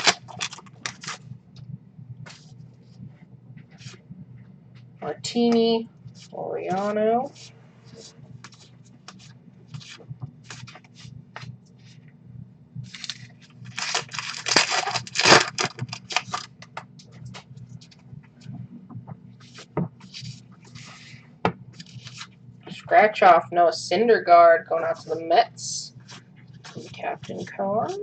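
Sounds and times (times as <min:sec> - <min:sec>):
cards scraping and rustling: 0:00.0 - 0:01.2, 0:07.4 - 0:11.5, 0:12.9 - 0:17.4, 0:21.8 - 0:22.3, 0:26.0 - 0:27.6
wrapper tearing: 0:00.0 - 0:01.2, 0:12.9 - 0:16.6
low hum: 0:00.0 - 0:28.0.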